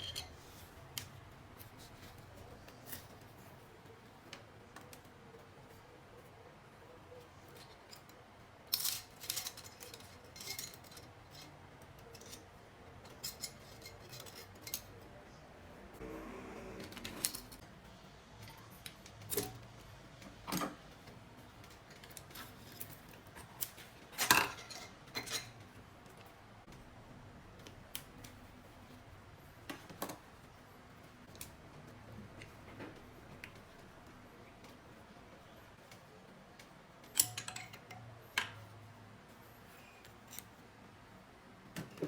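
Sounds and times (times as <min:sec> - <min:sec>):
metal tools clinking: 0:00.0 - 0:00.4.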